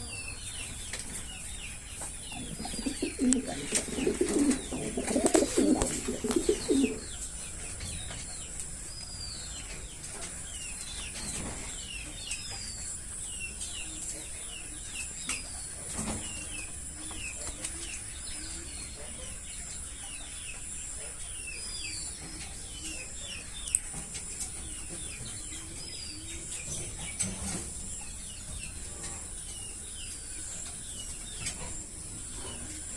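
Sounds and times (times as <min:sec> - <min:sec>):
low cooing calls: 0:02.3 - 0:07.0.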